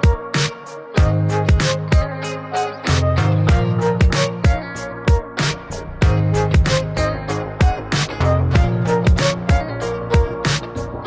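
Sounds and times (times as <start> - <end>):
steady drum beat: 0.0 - 2.1, 3.5 - 11.0
sustained melodic notes: 2.3 - 11.0.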